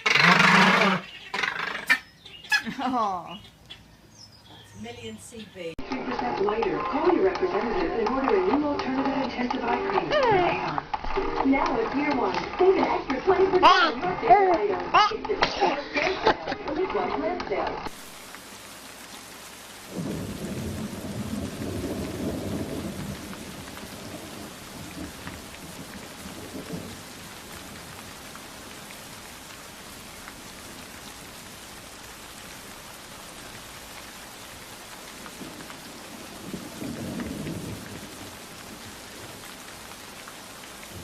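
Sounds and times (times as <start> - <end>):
steady rain hissing: 2.6 - 3.5, 4.2 - 41.0
thunder rumbling: 19.8 - 29.2, 34.9 - 41.0.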